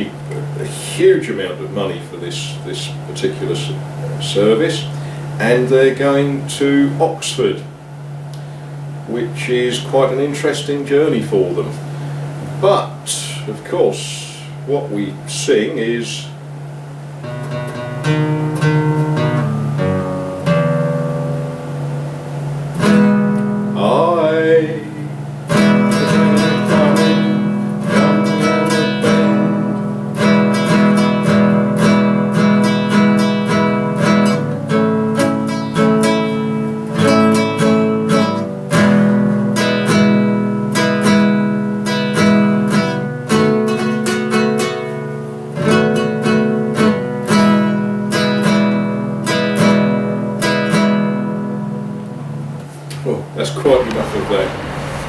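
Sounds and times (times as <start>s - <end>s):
acoustic guitar strummed: 17.2s - 52.5s.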